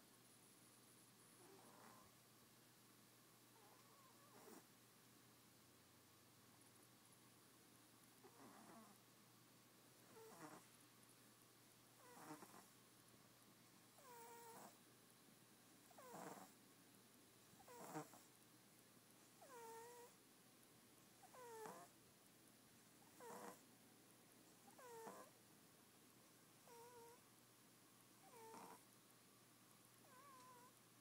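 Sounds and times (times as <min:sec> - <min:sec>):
cat snoring: 0:01.4 - 0:02.1, 0:03.6 - 0:04.7, 0:08.2 - 0:09.0, 0:10.1 - 0:10.7, 0:12.0 - 0:12.7, 0:14.0 - 0:14.8, 0:15.9 - 0:16.6, 0:17.6 - 0:18.3, 0:19.4 - 0:20.2, 0:21.2 - 0:21.9, 0:23.0 - 0:23.6, 0:24.6 - 0:25.3, 0:26.6 - 0:27.2, 0:28.2 - 0:28.8, 0:30.0 - 0:30.7.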